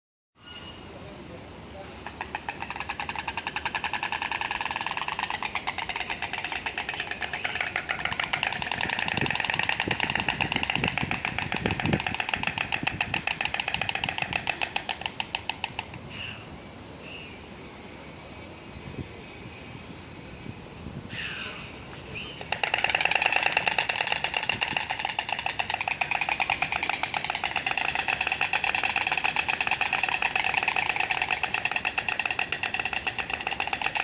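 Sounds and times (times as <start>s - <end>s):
bird beak clattering: 2.0s - 16.0s, 22.4s - 34.0s.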